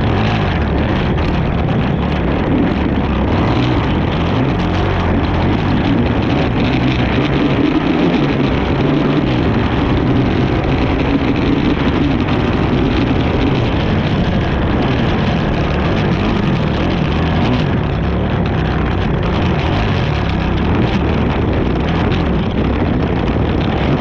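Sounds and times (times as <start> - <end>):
atv engine revving hard: 0.0 - 24.0
rough ride noise: 0.0 - 24.0.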